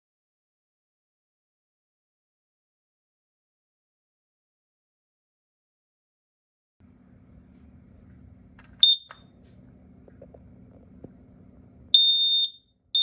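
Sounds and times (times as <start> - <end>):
fire alarm high beeps: 8.8 - 9.2, 12.0 - 13.0
alarm chirp: 8.8 - 9.3, 12.0 - 13.0.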